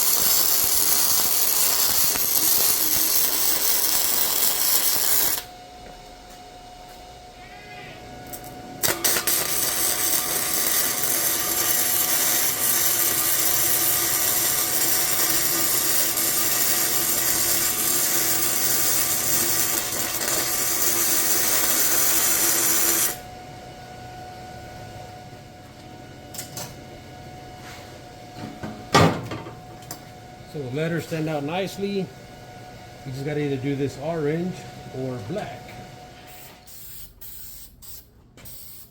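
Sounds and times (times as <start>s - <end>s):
power tool grinding on steel: 0.0s - 5.5s, 8.8s - 23.2s.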